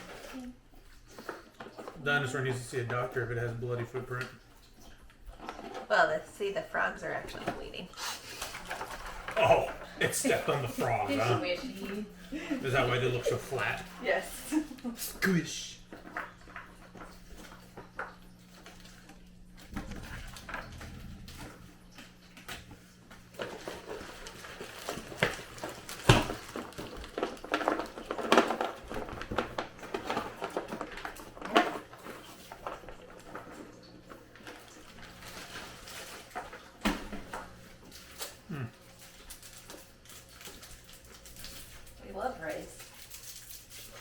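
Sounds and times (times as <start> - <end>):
candy wrappers rustling and clicking: 0.0 - 12.0, 12.6 - 44.0
low steady hum: 0.0 - 44.0.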